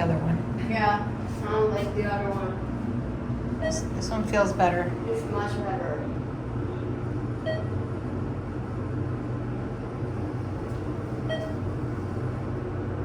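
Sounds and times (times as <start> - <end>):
elevator low hum: 0.0 - 13.0
short electronic beeps: 3.6 - 4.0, 7.4 - 7.8, 11.3 - 11.7.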